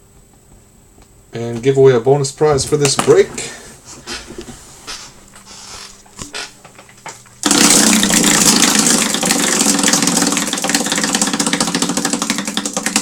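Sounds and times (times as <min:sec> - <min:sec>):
prize wheel ticking rapidly: 0:07.4 - 0:13.0.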